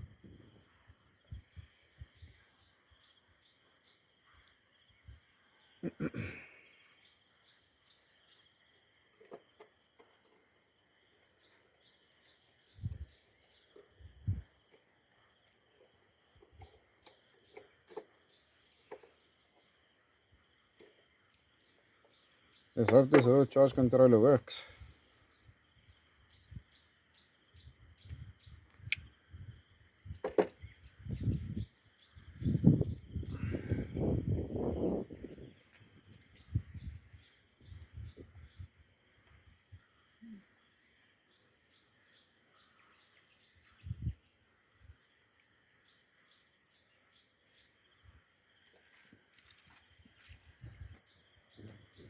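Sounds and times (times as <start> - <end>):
crickets chirring: 0.0 - 52.0.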